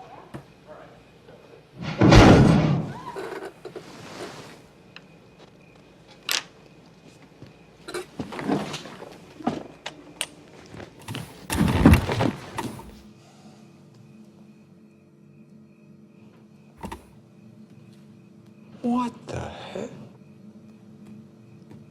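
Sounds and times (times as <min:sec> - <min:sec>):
clicks and thumps: 0:11.0 - 0:13.1, 0:16.8 - 0:17.1.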